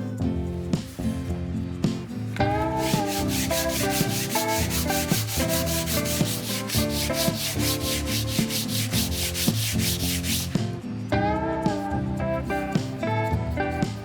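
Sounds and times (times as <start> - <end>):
background music: 0.0 - 14.0
abrasive rubbing by hand: 2.4 - 10.6.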